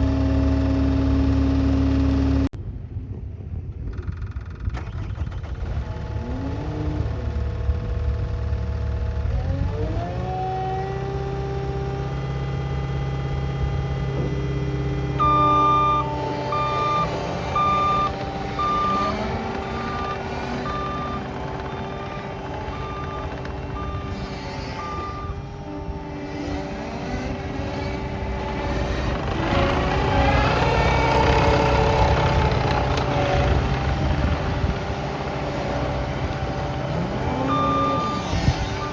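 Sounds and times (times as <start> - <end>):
diesel engine running: 0.0 - 2.6, 3.6 - 38.9
backup alarm beeping: 15.2 - 25.4, 37.3 - 38.9.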